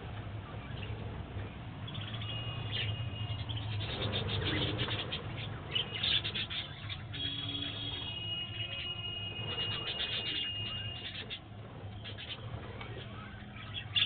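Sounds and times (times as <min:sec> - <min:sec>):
budgerigars chirping and chattering: 0:01.8 - 0:08.0, 0:08.7 - 0:11.4, 0:12.0 - 0:14.0.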